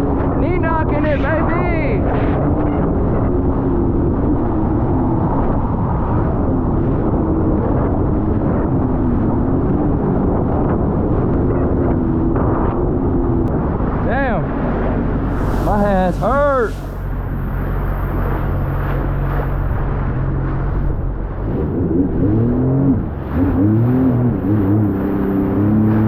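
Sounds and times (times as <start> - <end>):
jet ski engine running: 14.6 - 26.0
wind buffeting microphone: 14.9 - 21.4.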